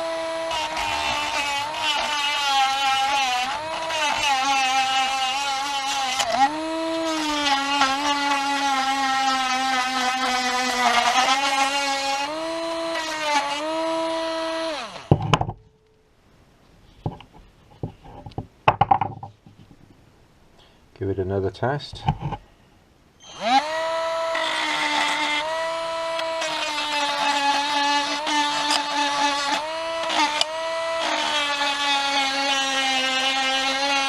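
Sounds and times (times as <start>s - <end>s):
rotary tool high whine: 0.0s - 15.4s, 23.2s - 34.0s.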